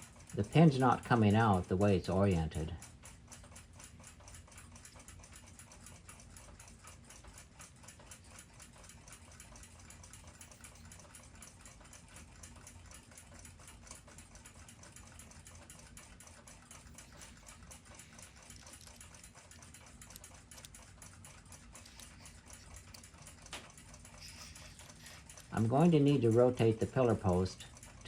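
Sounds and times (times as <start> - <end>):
clock ticking: 0.0 - 28.0
low steady hum: 6.1 - 28.0.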